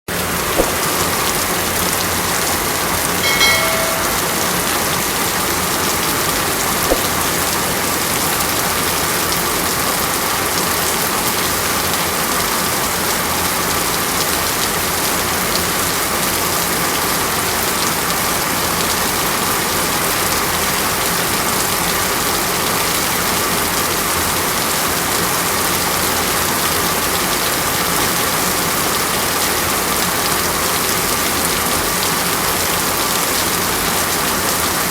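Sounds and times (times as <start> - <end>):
brief pitched sound: 3.3 - 4.8.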